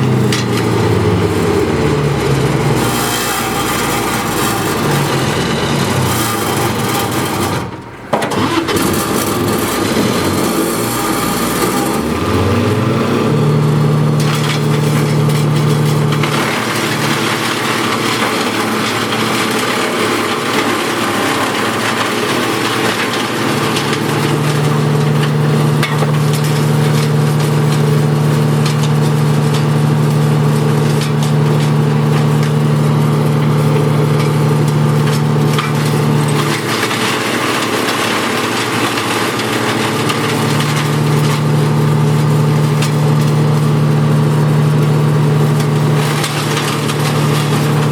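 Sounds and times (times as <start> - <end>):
wood chipper engine humming: 0.0 - 47.9
wood crackling and splintering: 0.0 - 47.9.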